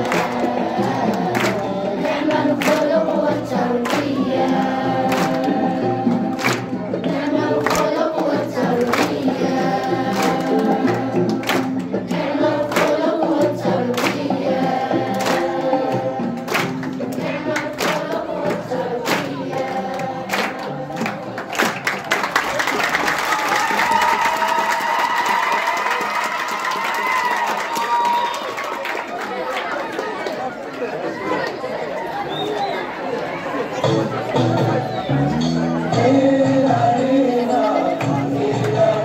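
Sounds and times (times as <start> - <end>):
group singing in chorus: 0.0 - 21.9, 34.7 - 39.0.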